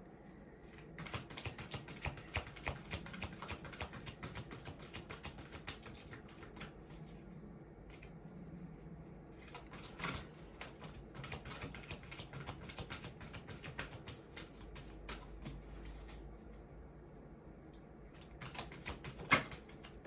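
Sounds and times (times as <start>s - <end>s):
cards being shuffled: 0.8s - 7.2s, 9.4s - 16.2s, 18.2s - 20.0s.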